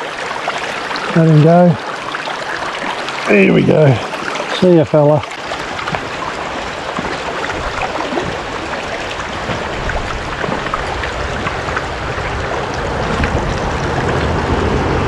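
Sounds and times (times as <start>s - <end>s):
river water flowing: 0.0s - 15.0s
small splashes and trickles: 0.0s - 15.0s.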